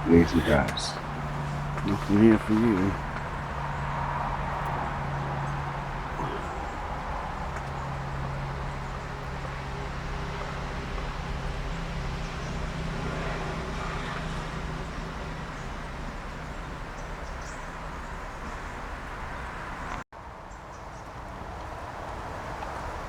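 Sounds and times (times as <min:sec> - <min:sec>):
vehicle traffic noise: 0:00.0 - 0:23.0.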